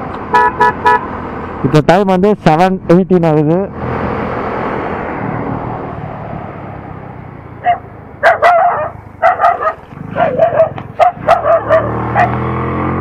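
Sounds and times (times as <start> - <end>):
dogs barking: 7.6 - 12.5
motorcycle engine running: 7.6 - 13.0.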